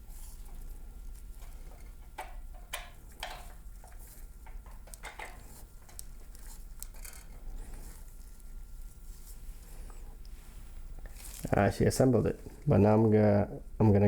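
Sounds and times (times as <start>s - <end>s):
low steady hum: 0.0s - 14.0s
metal parts clicking and tapping: 1.4s - 6.1s, 6.8s - 7.4s.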